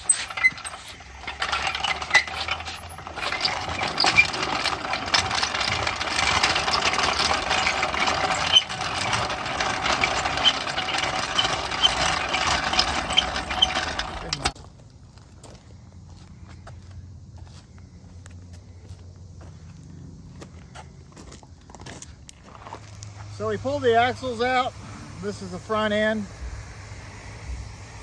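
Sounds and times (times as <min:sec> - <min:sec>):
steady mechanical noise: 0:00.0 - 0:28.0.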